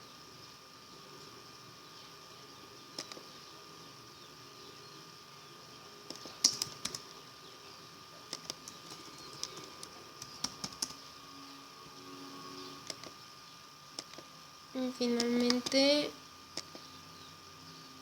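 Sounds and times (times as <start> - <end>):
faint steady hiss: 0.0 - 18.0
keyboard typing clicks: 6.1 - 7.2, 8.3 - 11.0.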